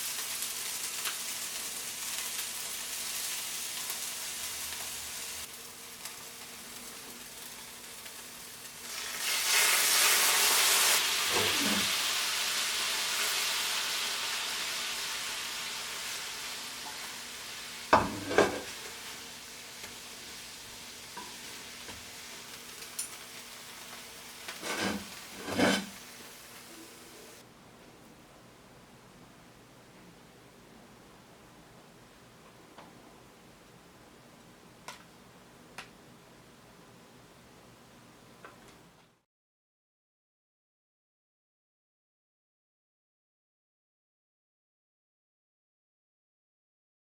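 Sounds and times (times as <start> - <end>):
meat sizzling in a frying pan: 0.0 - 27.4
utensil knocking against pan: 18.0 - 18.6.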